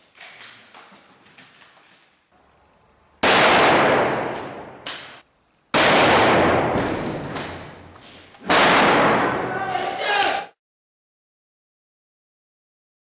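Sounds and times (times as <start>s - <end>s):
shotgun blasts ringing: 3.2s - 7.7s, 8.4s - 9.5s.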